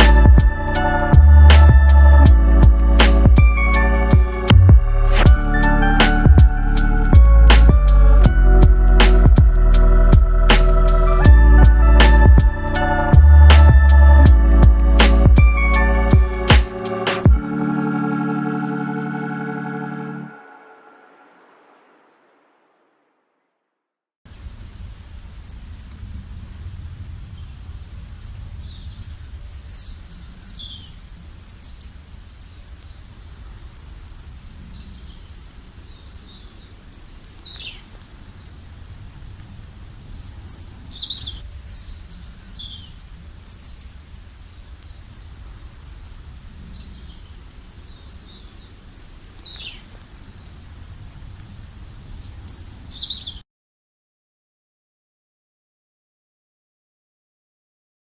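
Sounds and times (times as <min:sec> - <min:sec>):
songbirds chirping: 0:00.0 - 0:20.3, 0:24.4 - 0:53.4
low steady rumble: 0:04.6 - 0:16.1.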